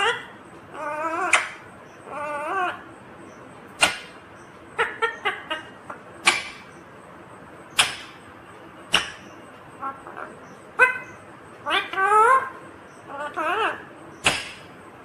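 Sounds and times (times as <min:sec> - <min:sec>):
parakeet squawking: 0:00.0 - 0:02.9, 0:03.9 - 0:06.8, 0:08.9 - 0:14.7.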